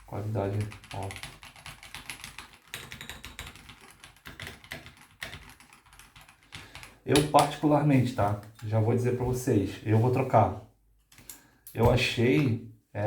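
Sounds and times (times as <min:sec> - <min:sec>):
mechanical keyboard typing: 0:00.3 - 0:07.5.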